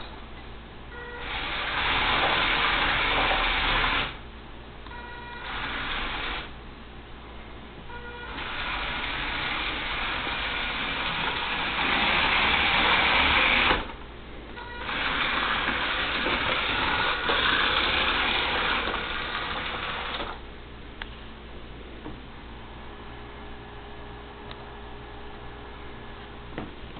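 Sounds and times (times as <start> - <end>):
robot vacuum wheel motors: 0.9 - 4.2, 5.2 - 6.6, 8.0 - 14.0, 14.6 - 20.4.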